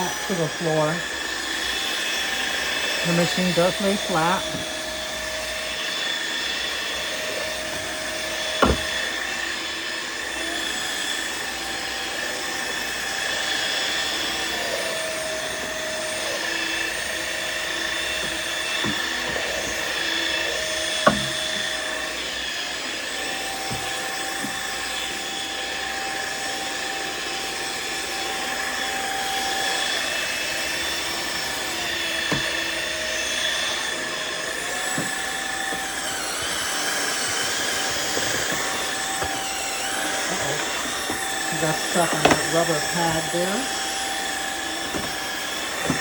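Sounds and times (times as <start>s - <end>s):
floor washer motor whine: 0.0s - 46.0s.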